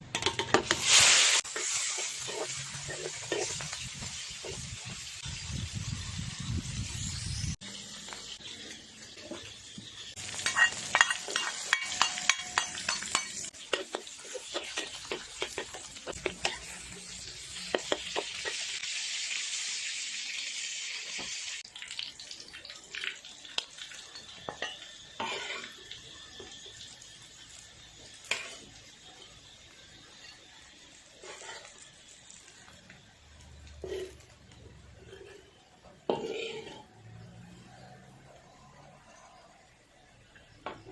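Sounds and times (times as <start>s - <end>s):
food sizzling in hot oil: 0.0s - 40.9s
utensil scraping a pan: 0.2s - 3.8s, 10.3s - 16.8s, 25.2s - 25.8s, 31.2s - 31.8s, 35.0s - 37.0s.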